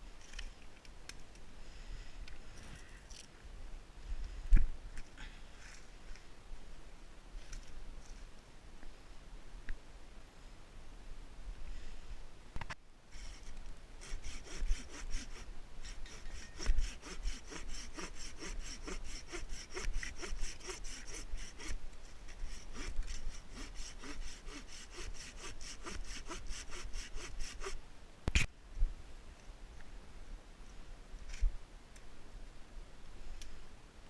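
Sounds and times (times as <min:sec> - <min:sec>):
hand saw cutting wood: 0:13.2 - 0:27.8.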